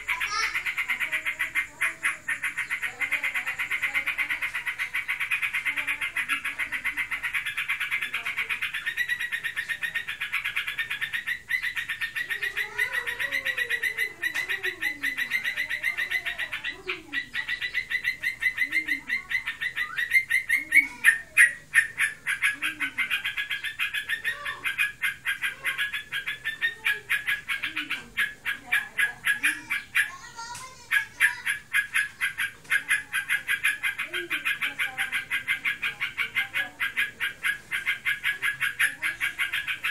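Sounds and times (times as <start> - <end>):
bird rapid rattling trill: 0.0 - 39.9.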